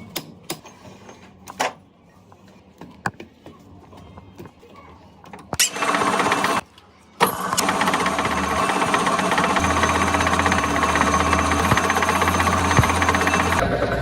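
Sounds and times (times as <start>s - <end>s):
machine rattling drone: 5.6s - 6.6s, 7.2s - 14.0s.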